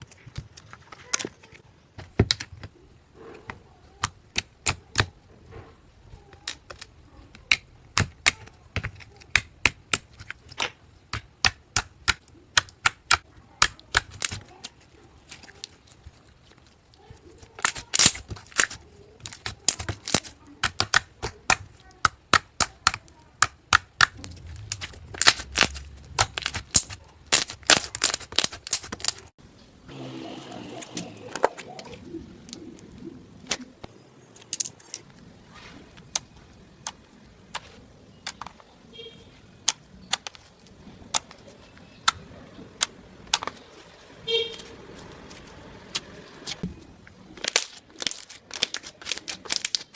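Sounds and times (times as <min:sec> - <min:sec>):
slime popping: 0:15.3 - 0:29.3.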